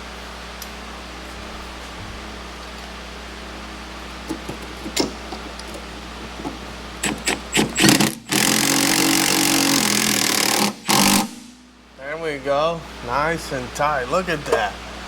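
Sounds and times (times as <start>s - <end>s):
cordless impact wrench running: 7.0s - 11.4s.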